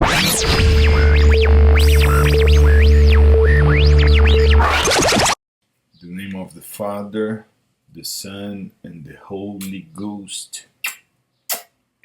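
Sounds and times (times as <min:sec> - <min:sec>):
low bass drone: 0:00.0 - 0:05.0
sweeping synthesizer tones: 0:00.0 - 0:05.3.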